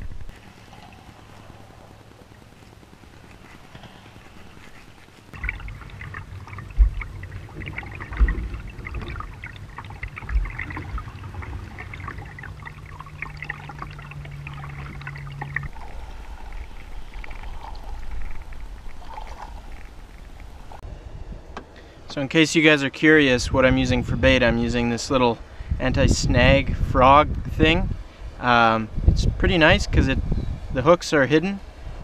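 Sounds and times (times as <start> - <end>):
water splashing and trickling: 0.0 - 20.8
low thumps: 5.3 - 20.8.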